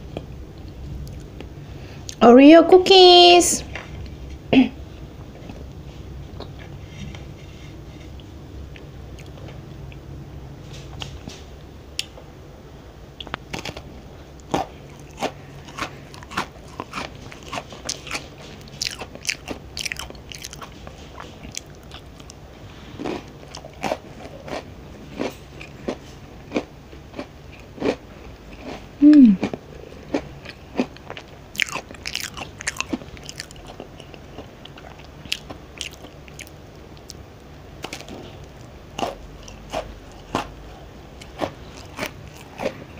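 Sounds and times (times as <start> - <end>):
cookies crunching: 13.2 - 22.4, 23.0 - 37.2, 41.2 - 42.9
hum-like voice sound: 29.0 - 29.4.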